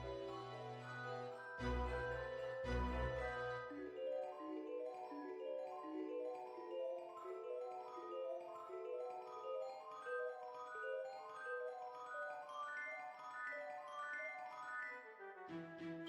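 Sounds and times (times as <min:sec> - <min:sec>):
marimba melody: 0:00.0 - 0:12.1.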